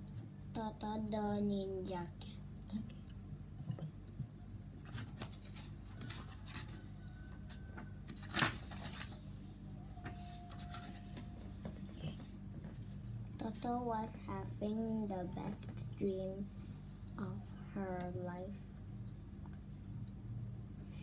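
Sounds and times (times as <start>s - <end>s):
electrical hum: 0.0s - 21.0s
paper rustling: 4.8s - 6.8s, 8.1s - 9.2s.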